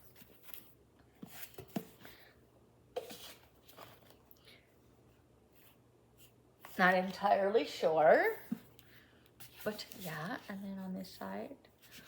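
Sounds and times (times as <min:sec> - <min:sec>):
book rustling and tapping: 0:00.1 - 0:02.1.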